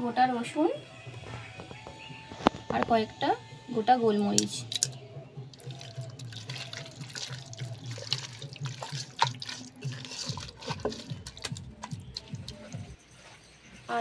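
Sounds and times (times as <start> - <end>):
wet clicks and smacks: 4.3 - 13.0
hands squelching in wet marinade: 4.4 - 13.2.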